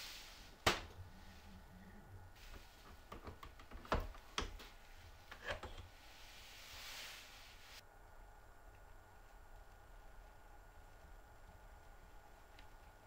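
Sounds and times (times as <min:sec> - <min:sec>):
faint hiss: 0:00.0 - 0:02.9, 0:05.8 - 0:13.0
sharp clicks and knocks: 0:02.9 - 0:04.7.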